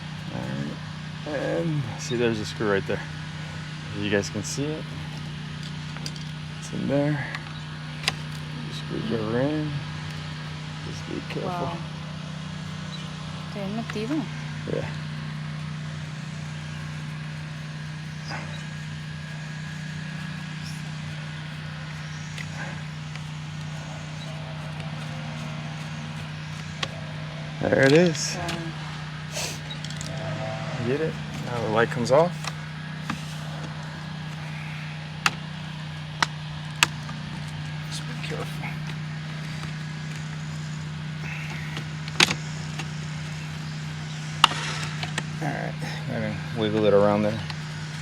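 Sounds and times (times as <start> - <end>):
steady low hum: 0.0 - 48.0.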